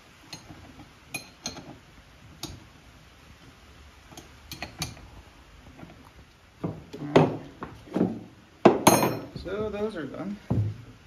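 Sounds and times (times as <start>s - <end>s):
wrench clinking on metal fittings: 4.1s - 5.0s.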